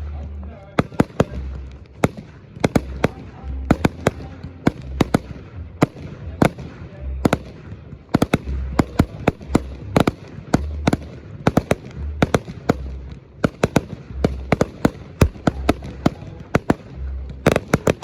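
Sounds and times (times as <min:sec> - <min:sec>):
fireworks cracking and banging: 0:00.0 - 0:18.0
low rumble: 0:00.0 - 0:18.0.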